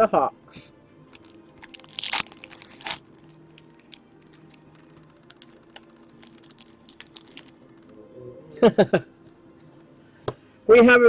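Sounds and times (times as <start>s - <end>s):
foil wrapper crinkling and tearing: 1.1s - 7.6s.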